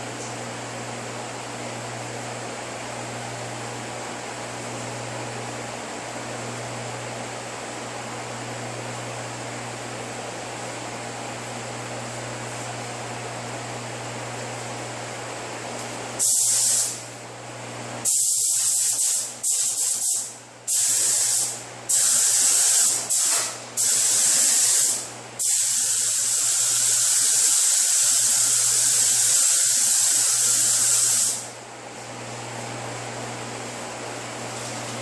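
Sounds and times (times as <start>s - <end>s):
paint spray gun hissing: 16.2s - 17.0s, 18.0s - 31.5s.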